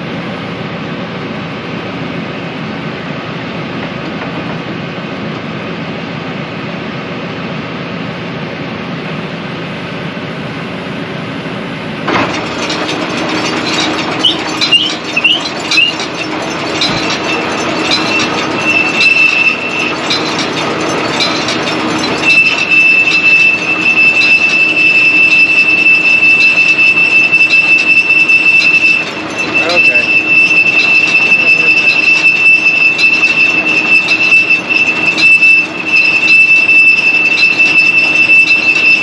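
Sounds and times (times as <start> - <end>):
round baler running: 8.6 - 39.0
high-pitched squeal: 12.3 - 39.0.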